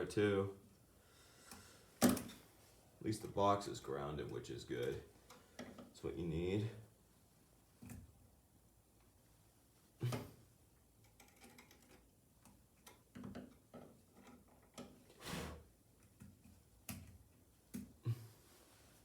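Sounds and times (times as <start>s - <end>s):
short scrape: 15.2s - 15.7s.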